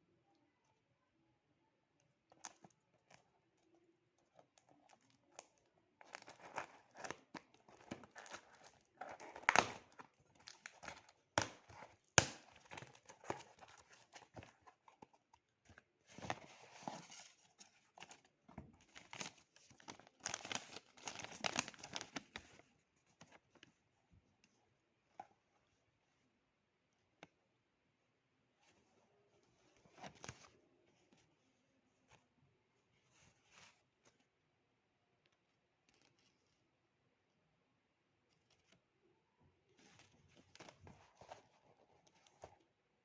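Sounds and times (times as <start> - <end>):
packaging crinkling and tearing: 4.9 - 14.5, 18.9 - 22.4.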